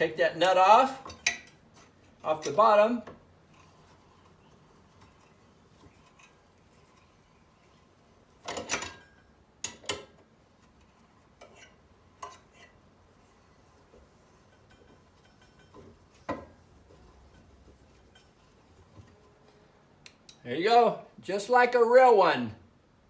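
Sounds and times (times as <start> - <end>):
metal nut and bolt clinking: 8.4 - 10.8.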